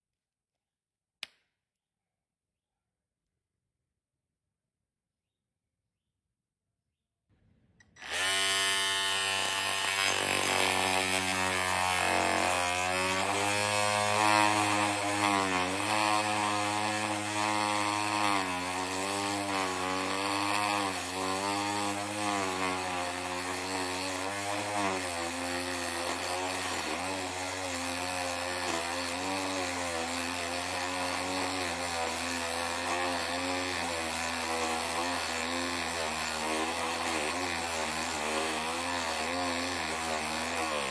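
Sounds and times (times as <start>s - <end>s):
electric power tool running: 7.4s - 40.9s.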